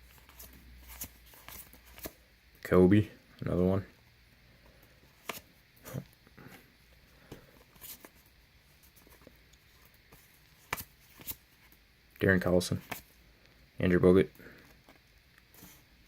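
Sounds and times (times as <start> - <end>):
trading cards flipped: 0.2 - 2.2, 5.2 - 5.5, 10.1 - 11.4.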